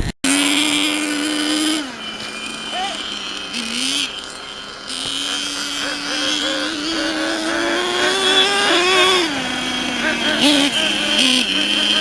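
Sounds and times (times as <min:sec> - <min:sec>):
small two-stroke engine revving: 0:00.0 - 0:12.0.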